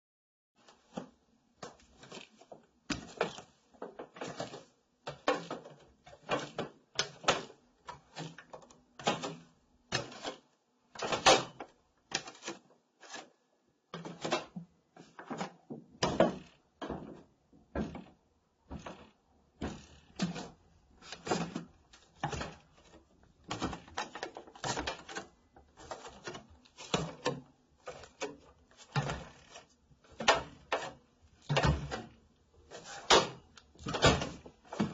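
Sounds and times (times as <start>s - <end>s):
wooden stairs creaking: 16.0s - 21.6s
bare footsteps on wooden stairs: 16.1s - 20.4s.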